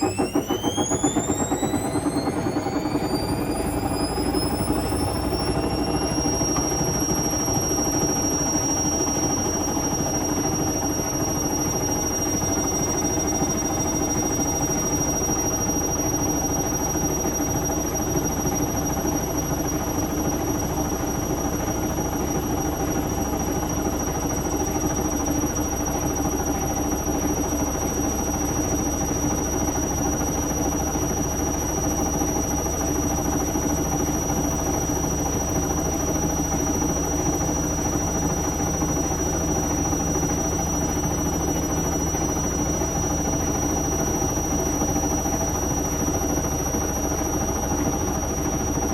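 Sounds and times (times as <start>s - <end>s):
high-pitched door seal squeal: 0.0s - 14.3s
washing machine spinning: 0.0s - 48.9s.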